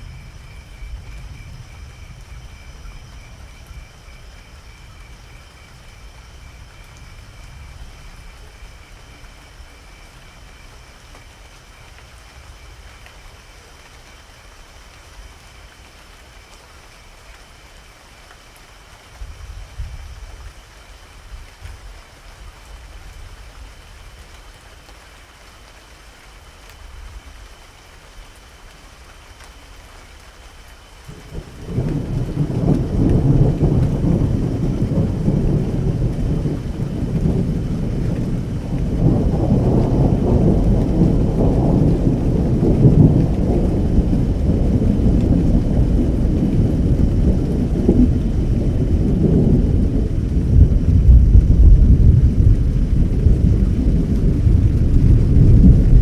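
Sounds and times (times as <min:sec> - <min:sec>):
low rumble of thunder: 0:00.0 - 0:14.2, 0:19.1 - 0:20.6, 0:31.1 - 0:56.0
steady rain falling: 0:00.0 - 0:56.0.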